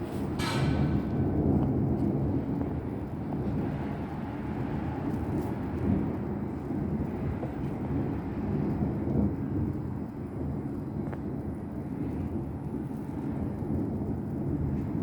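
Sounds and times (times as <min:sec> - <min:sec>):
rolling thunder rumbling: 0:00.0 - 0:05.0.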